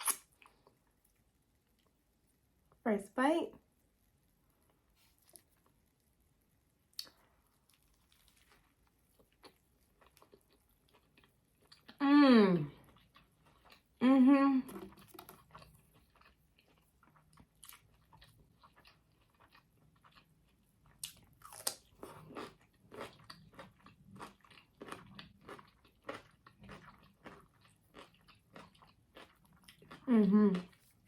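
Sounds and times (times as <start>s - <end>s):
person chewing with crunching: 0.0s - 2.0s, 4.7s - 6.1s, 6.9s - 12.0s, 12.6s - 14.0s, 14.6s - 31.0s
person humming: 12.0s - 12.7s.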